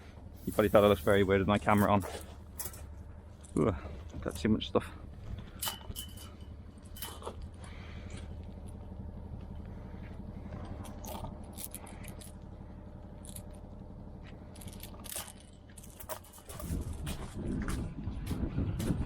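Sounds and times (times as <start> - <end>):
low engine drone: 0.0 - 19.0
crunching footsteps: 0.4 - 4.4, 14.2 - 19.0
clicks from carried gear: 10.6 - 12.4, 14.3 - 17.1.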